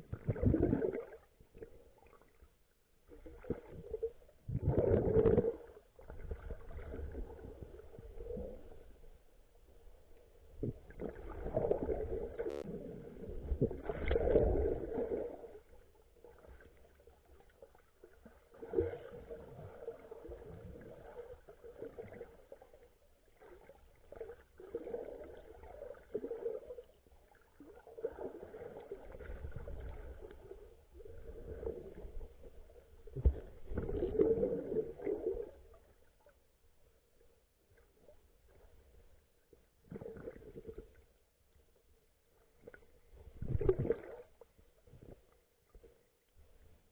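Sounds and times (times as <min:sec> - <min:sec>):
water sloshing underwater: 0:00.0 - 0:46.9.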